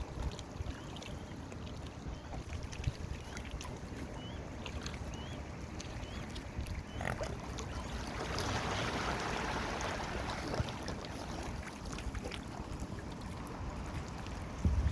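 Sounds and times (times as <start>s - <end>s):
wind rumbling on microphone: 13.2s - 14.9s.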